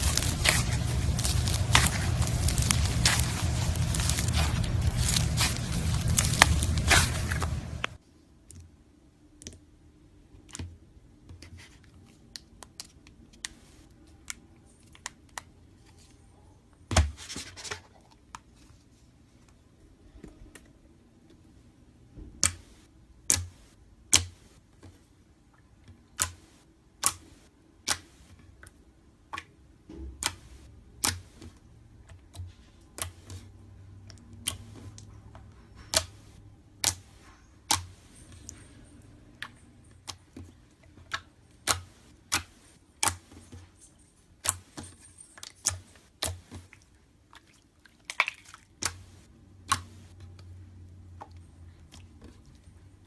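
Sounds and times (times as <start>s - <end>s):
crackly slime burst: 0.0s - 8.0s.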